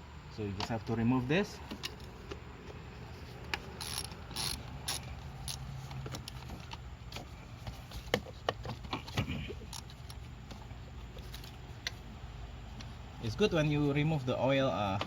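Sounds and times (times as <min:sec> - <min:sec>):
hand ratchet clicking: 0:03.8 - 0:06.4.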